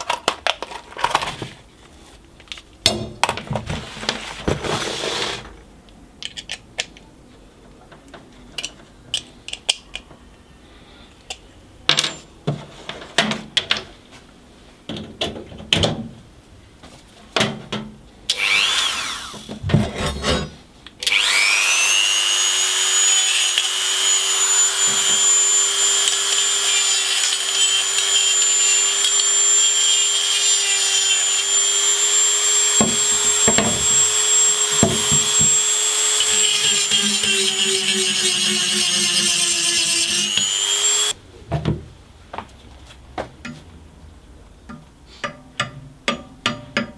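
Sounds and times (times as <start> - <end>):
tools and parts clicking: 6.2 - 7.0, 8.6 - 10.1
electric power tool whining: 18.3 - 19.6, 21.0 - 41.2.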